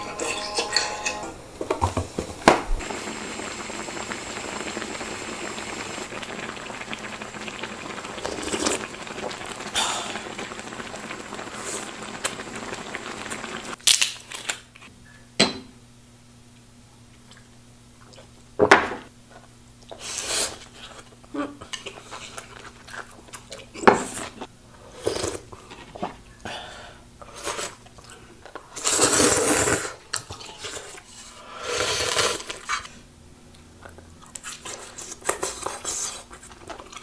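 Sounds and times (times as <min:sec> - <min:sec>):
pot bubbling at a boil: 0:00.0 - 0:13.8, 0:15.0 - 0:37.0.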